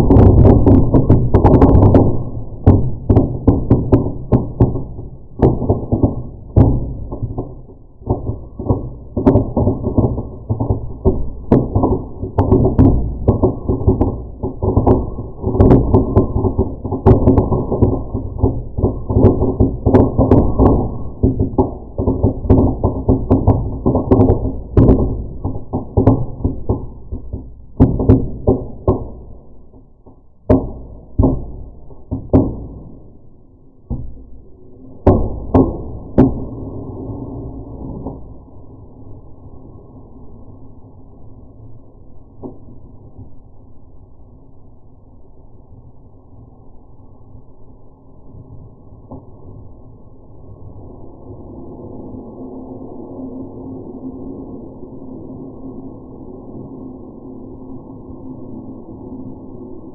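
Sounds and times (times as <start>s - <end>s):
slowed firework deep pops and thuds: 0.0s - 38.6s.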